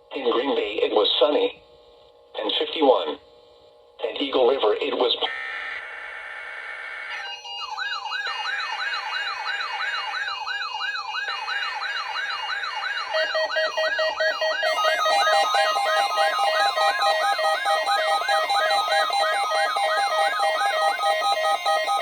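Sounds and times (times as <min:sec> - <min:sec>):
electronic warbling alarm: 0:11.2 - 0:22.0
pulsing beeps: 0:13.1 - 0:22.0
steady electronic tones: 0:13.1 - 0:22.0.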